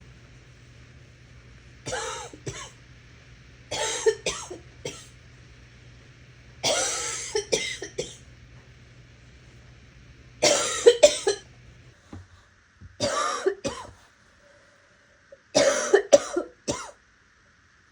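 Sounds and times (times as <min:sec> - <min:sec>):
person coughing raspily: 0:01.9 - 0:02.8, 0:03.7 - 0:05.1, 0:06.6 - 0:08.2, 0:10.4 - 0:11.4, 0:13.0 - 0:14.0, 0:15.6 - 0:17.0.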